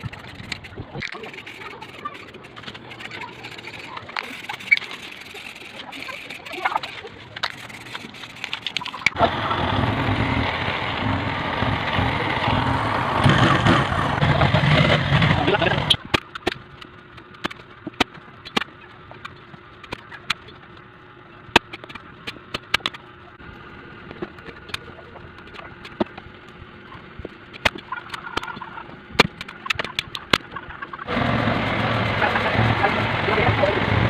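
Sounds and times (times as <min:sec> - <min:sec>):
sharp clicks and knocks: 0:13.2 - 0:23.1, 0:24.0 - 0:31.1.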